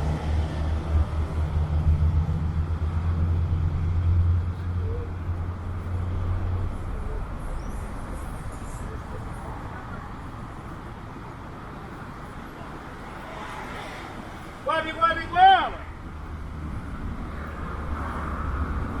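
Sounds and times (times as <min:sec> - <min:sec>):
vehicle engine running: 0:00.0 - 0:13.2
street noise: 0:00.0 - 0:19.0.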